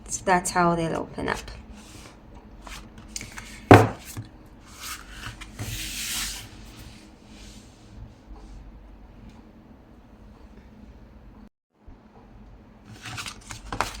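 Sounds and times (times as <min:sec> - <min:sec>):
knock on desk: 0:03.7 - 0:04.0
paper rustling and creasing: 0:12.9 - 0:14.0.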